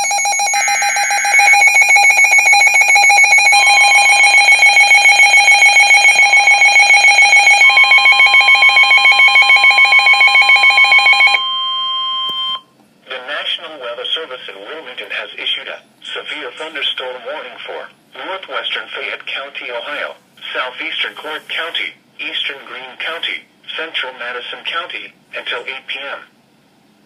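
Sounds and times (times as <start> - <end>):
pulsing electronic alarm beeps: 0.0 - 12.6
steady high tones: 0.0 - 12.6
steady single warning tone: 0.0 - 12.7.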